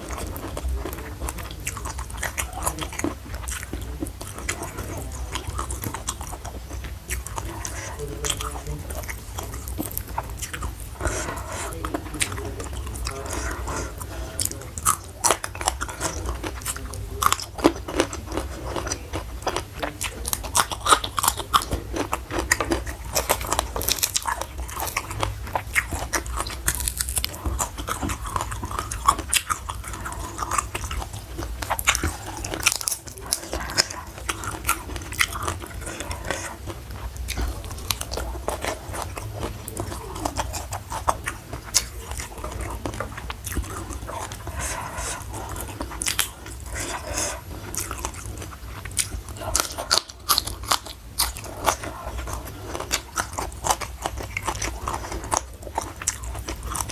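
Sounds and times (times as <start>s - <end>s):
crunching and chewing crisp food: 0.0s - 56.9s
steady low hum: 0.0s - 56.9s.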